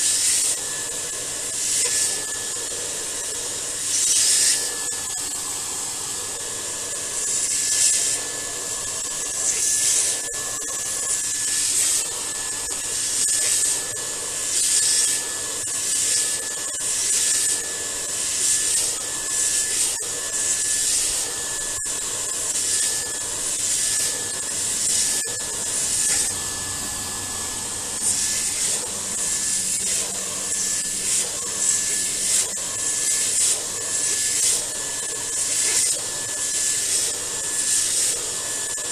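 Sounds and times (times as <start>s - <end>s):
vacuum cleaner high whine: 0.0s - 38.9s
vacuum nozzle scraping filter: 9.4s - 34.7s.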